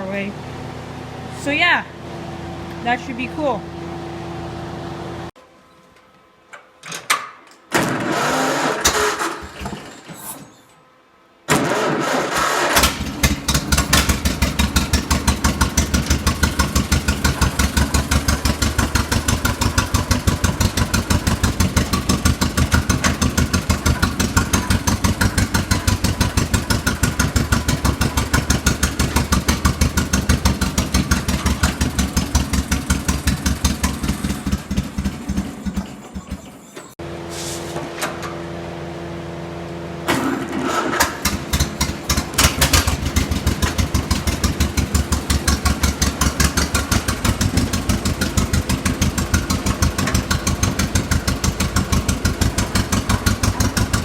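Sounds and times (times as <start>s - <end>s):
tractor engine pulsing: 11.5s - 37.0s, 40.1s - 54.0s.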